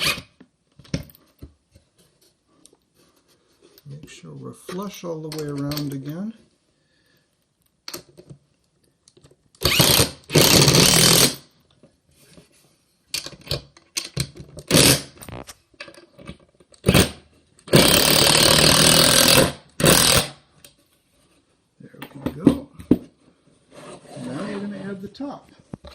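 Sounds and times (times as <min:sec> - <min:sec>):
power drill driving screws into wood: 0:09.6 - 0:11.4, 0:14.6 - 0:15.2, 0:16.8 - 0:20.4.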